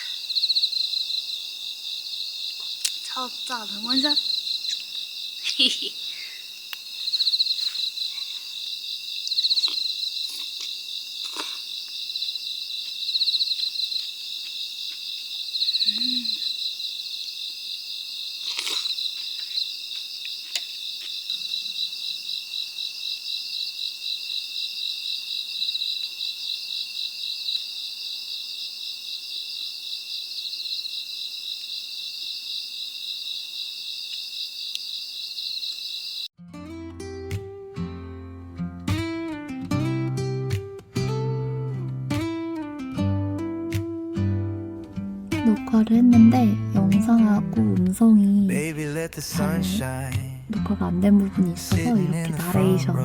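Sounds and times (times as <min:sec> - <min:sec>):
crickets trilling: 0:00.0 - 0:36.3.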